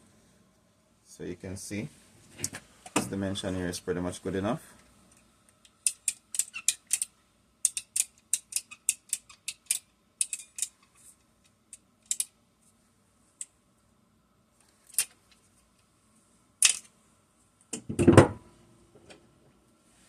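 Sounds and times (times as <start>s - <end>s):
sharp light clicks of small parts: 4.8s - 12.4s.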